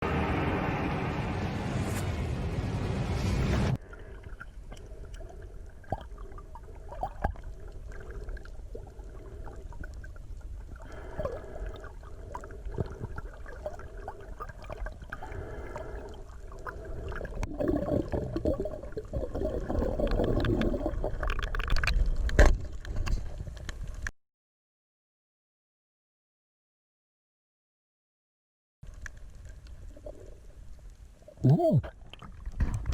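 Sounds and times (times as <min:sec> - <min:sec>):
muffled underwater water wash: 0:02.9 - 0:24.1, 0:28.8 - 0:32.9.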